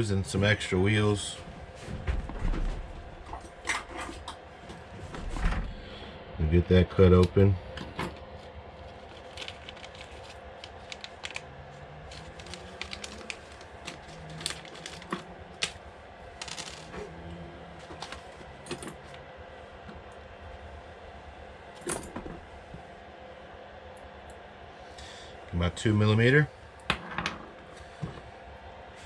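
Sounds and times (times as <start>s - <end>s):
faint hum: 0.0s - 29.0s
plastic bag rustling: 8.8s - 16.9s.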